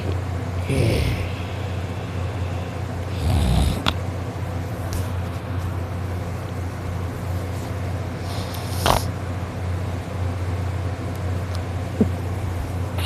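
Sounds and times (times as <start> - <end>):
boy snoring: 0.0 - 1.8, 3.1 - 3.9, 8.2 - 9.1
steady low hum: 0.0 - 13.0.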